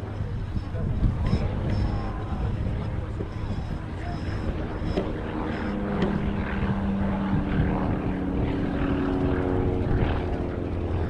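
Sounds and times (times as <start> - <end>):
propeller airplane engine drone: 0.0 - 11.0.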